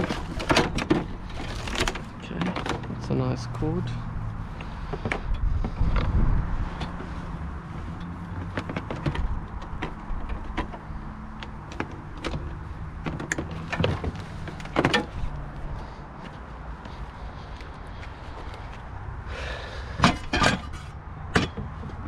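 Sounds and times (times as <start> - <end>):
knocks and clatter of junk: 0.0 - 3.2, 4.9 - 17.0, 19.9 - 22.0.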